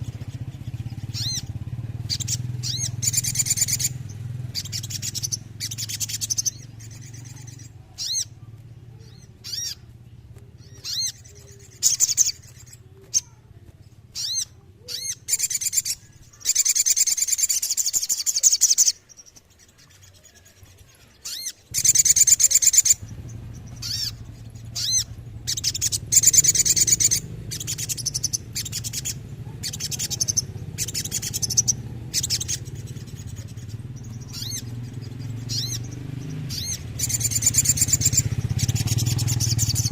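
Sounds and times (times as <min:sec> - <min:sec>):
bird chirping: 0:00.0 - 0:39.9
bird rolling trills: 0:00.0 - 0:39.9.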